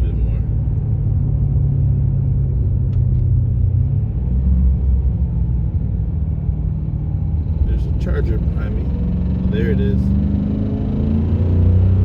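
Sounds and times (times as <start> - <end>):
engine rumble inside car cabin: 0.0 - 12.0.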